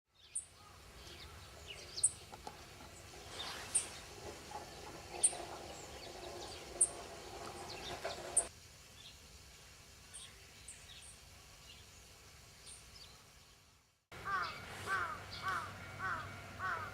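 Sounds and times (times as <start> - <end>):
outdoor background noise: 0.1 - 16.9
other birds calling faintly: 0.2 - 8.5, 10.1 - 16.9
bird high chirp: 14.2 - 16.9.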